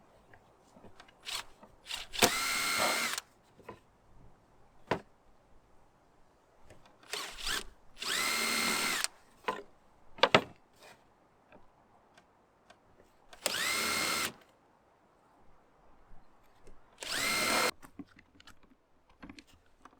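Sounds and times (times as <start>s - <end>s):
power drill driving screws: 1.2s - 3.2s, 7.1s - 9.1s, 13.4s - 14.4s, 17.0s - 17.7s.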